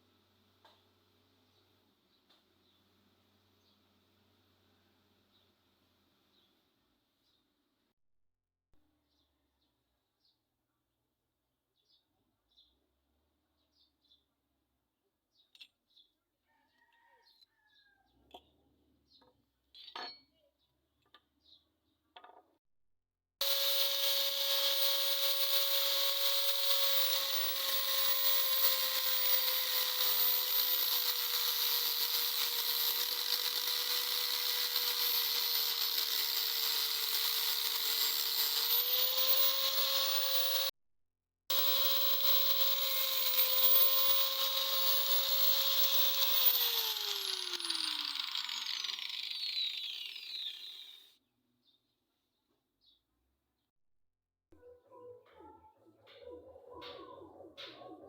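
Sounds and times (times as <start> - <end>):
power tool humming and hissing: 23.4 - 40.7, 41.5 - 51.1.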